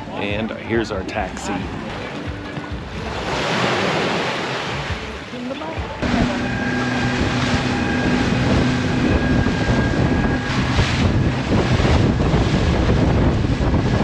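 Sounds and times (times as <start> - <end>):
boat engine humming: 0.0 - 14.0
rushing water: 0.0 - 14.0
wind noise on microphone: 6.0 - 14.0.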